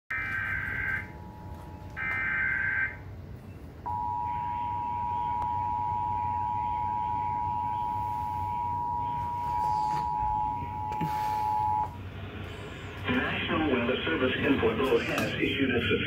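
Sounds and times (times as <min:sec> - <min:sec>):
steady two-tone attention signal: 0:03.9 - 0:12.0.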